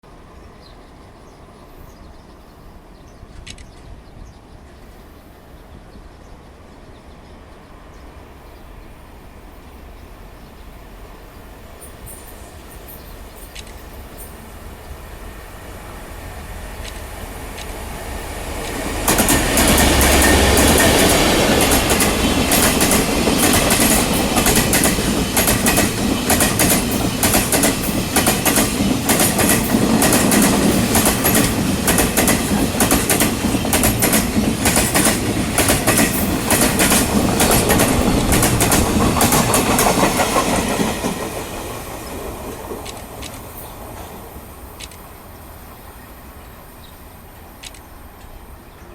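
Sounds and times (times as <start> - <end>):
wagons clacking over rail joints: 18.6 - 41.4.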